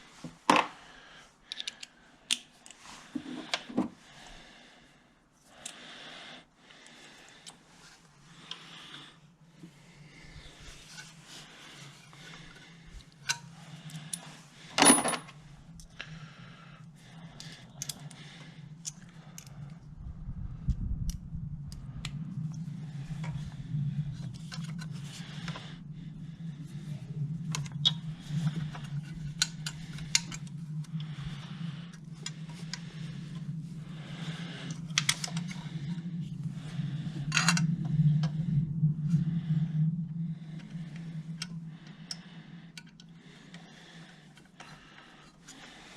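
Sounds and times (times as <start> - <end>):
steady low hum: 0.0 - 45.9
metal tools clinking: 14.1 - 15.4.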